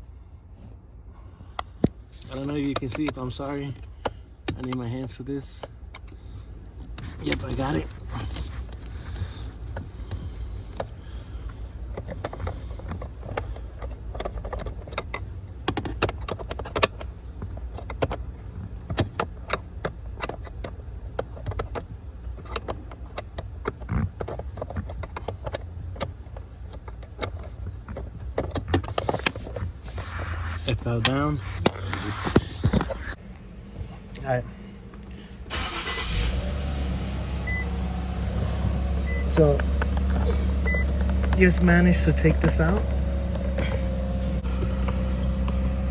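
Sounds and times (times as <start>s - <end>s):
low hum: 29.7s - 45.9s.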